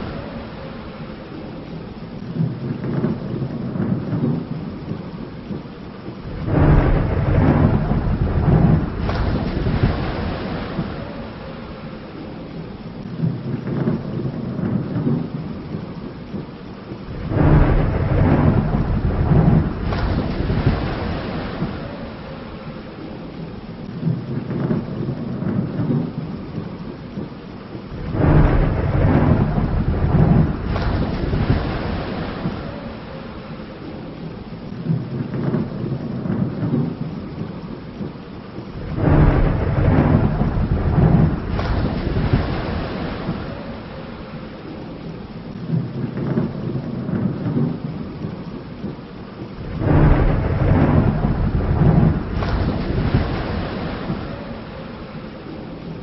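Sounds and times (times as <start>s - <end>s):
steady rain: 0.0s - 56.0s
thunder rumbling: 0.0s - 56.0s.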